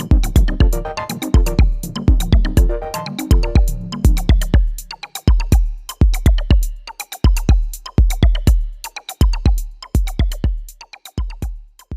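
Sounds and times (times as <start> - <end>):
electronic drum-machine beat: 0.0 - 11.9.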